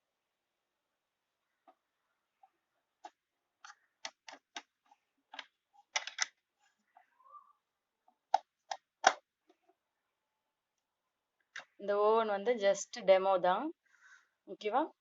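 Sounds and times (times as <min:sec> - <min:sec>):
toy pieces clicking and tapping: 0:03.0 - 0:06.3.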